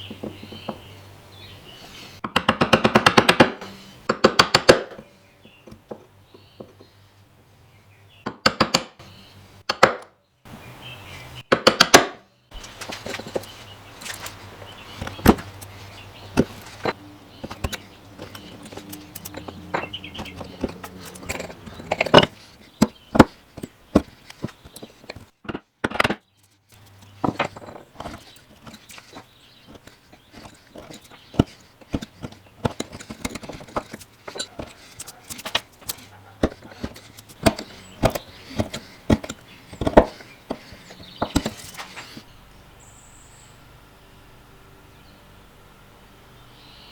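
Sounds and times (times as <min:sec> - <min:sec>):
hand tools tapping on wood: 0:00.0 - 0:00.9, 0:02.2 - 0:06.9, 0:08.2 - 0:09.0, 0:11.5 - 0:42.2.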